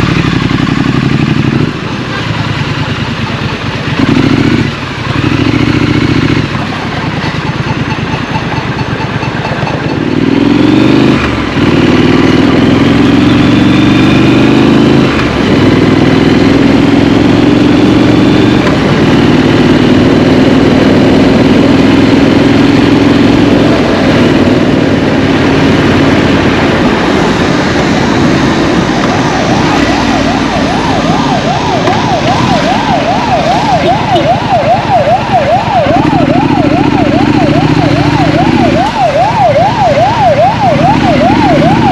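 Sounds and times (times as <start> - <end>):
motorcycle engine revving: 0.0 - 41.9
wavering emergency siren: 10.4 - 41.9.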